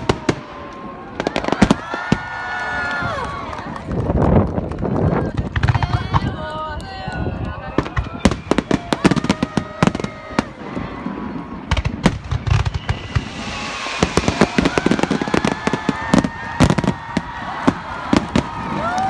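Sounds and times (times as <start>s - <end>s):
fireworks bangs and crackles: 0.0s - 19.0s.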